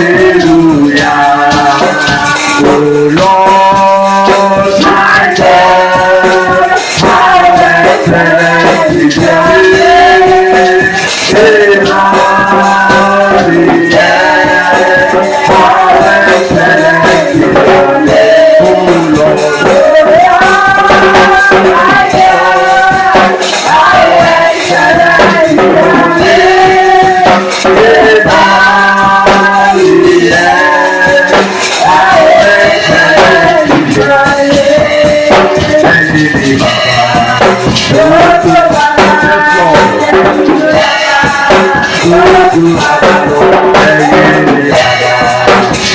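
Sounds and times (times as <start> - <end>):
church worship singing: 0.0 - 45.9
hand percussion rattle shaking: 0.0 - 45.9.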